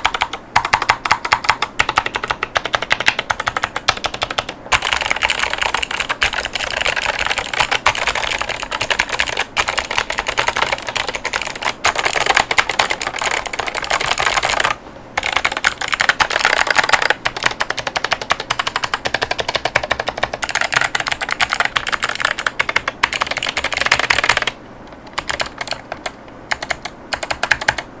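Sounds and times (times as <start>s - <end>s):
clicky mechanical keyboard typing: 0.0s - 27.9s.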